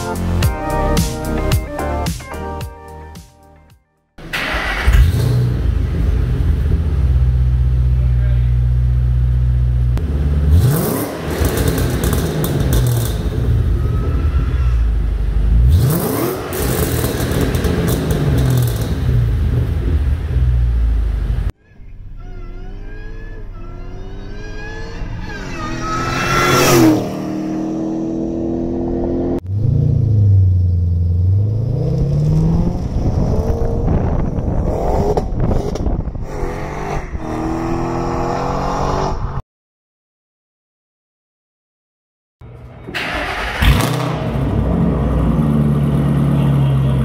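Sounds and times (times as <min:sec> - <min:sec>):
car engine revving: 0:04.2 - 0:13.9, 0:14.9 - 0:39.4, 0:43.0 - 0:47.0
supercharger whine: 0:14.9 - 0:39.4.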